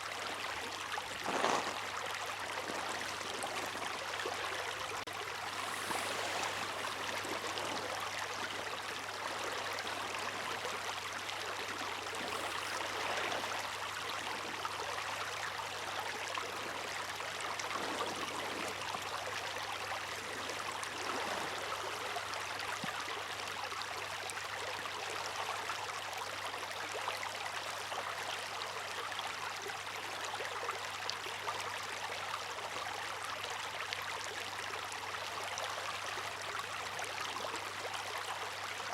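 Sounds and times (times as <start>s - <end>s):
water rushing and splashing: 0.0s - 22.6s.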